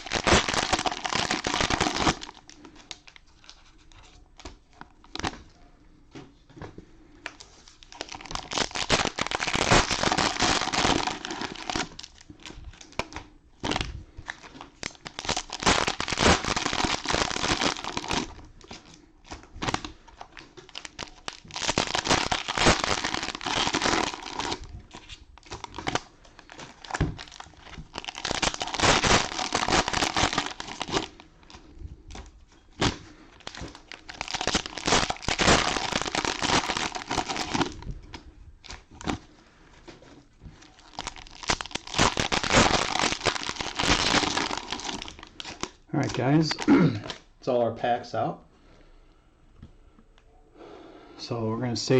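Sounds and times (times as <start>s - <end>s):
cellophane crinkling: 0.0s - 5.6s, 7.2s - 47.3s
sharp crackles and clicks: 28.2s - 31.1s, 41.4s - 46.2s.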